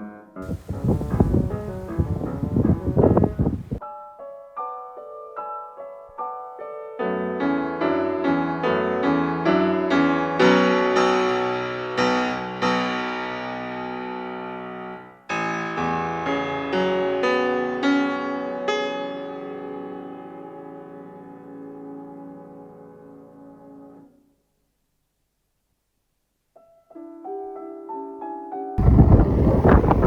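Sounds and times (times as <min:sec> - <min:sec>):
piano music: 0:00.4 - 0:24.1.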